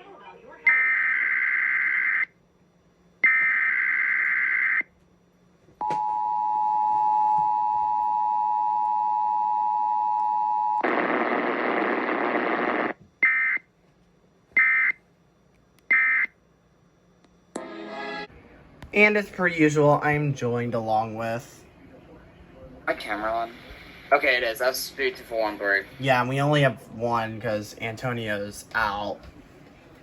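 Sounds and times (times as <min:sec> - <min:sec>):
static hiss: 0:10.8 - 0:13.0.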